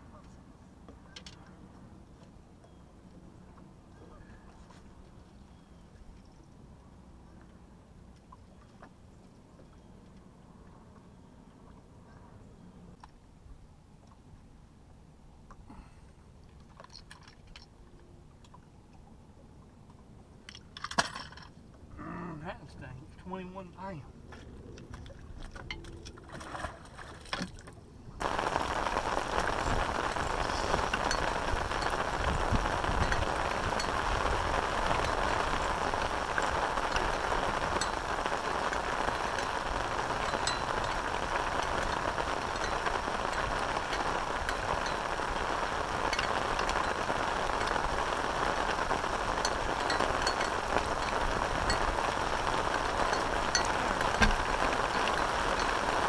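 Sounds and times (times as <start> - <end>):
steady rain falling: 28.2 - 56.0.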